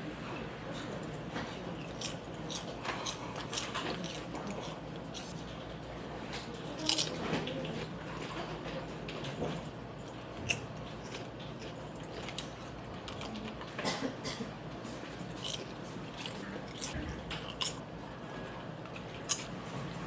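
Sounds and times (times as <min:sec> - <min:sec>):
person eating crisp bites: 0:01.8 - 0:05.5, 0:15.3 - 0:17.8, 0:19.2 - 0:19.5.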